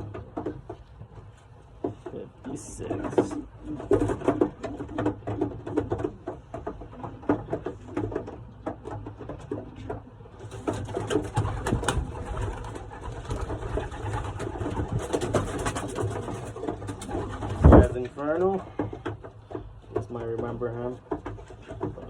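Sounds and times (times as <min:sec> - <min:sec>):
birds rustling and clicking: 0:00.0 - 0:22.0
pigeons cooing: 0:02.9 - 0:19.8.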